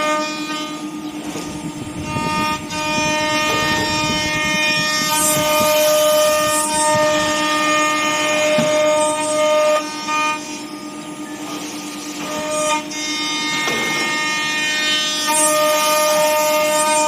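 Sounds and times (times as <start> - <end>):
router cutting noise: 0.0 - 17.0
router spindle whine: 0.0 - 17.0.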